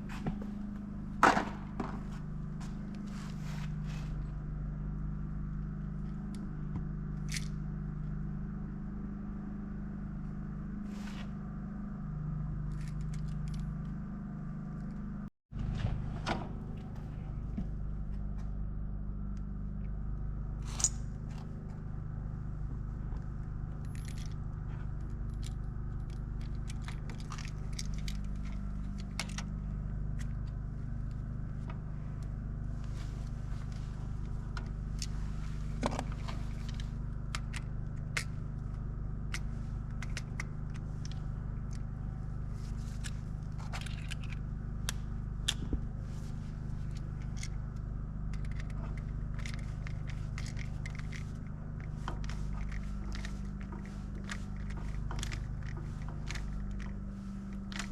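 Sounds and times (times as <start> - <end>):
low engine-like hum: 0.0 - 57.9
small parts clicking and scraping: 7.2 - 7.6, 12.7 - 13.7, 20.6 - 21.5, 23.2 - 31.2, 33.2 - 41.9, 42.5 - 57.9.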